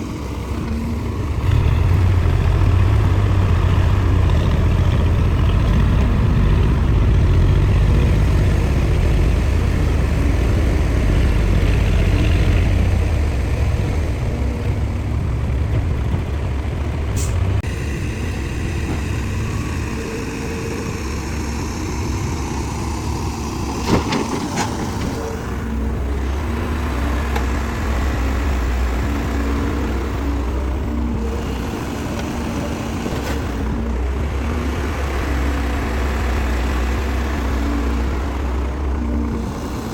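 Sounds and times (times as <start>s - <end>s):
diesel engine rumble: 0.0s - 39.9s.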